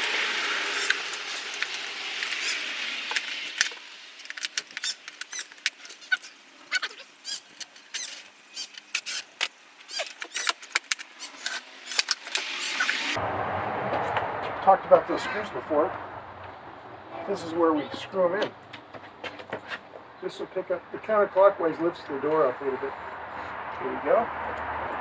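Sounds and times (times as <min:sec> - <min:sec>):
steady hiss: 0:00.0 - 0:13.3, 0:20.2 - 0:24.3.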